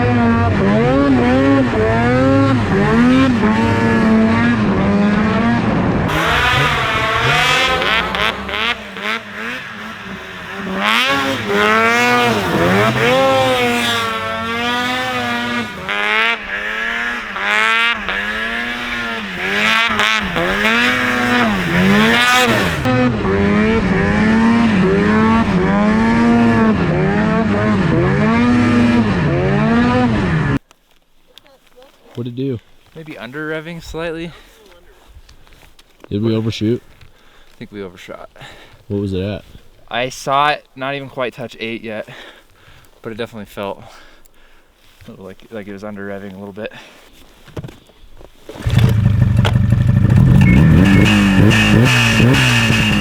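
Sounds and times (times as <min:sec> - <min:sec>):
snowmobile engine revving: 0:00.0 - 0:30.6, 0:48.5 - 0:53.0.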